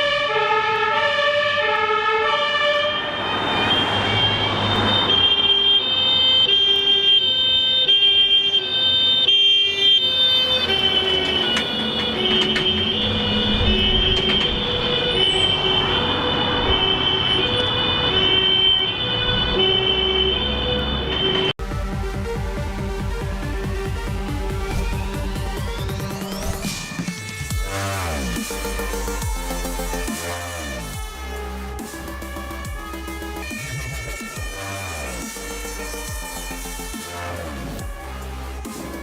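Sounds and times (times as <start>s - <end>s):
two-tone siren: 0.0s - 21.6s, 22.8s - 39.0s
heavy vehicle engine rumbling: 2.8s - 6.5s, 9.7s - 39.0s.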